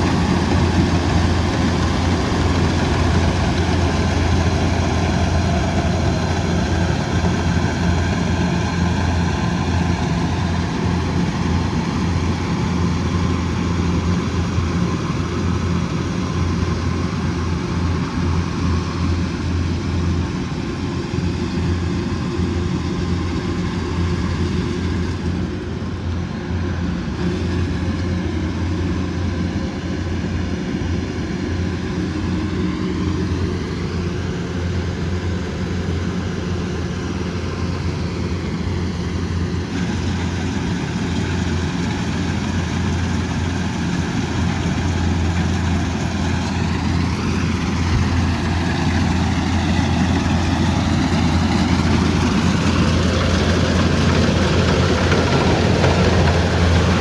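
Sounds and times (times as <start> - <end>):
diesel engine humming: 0.0 - 57.0.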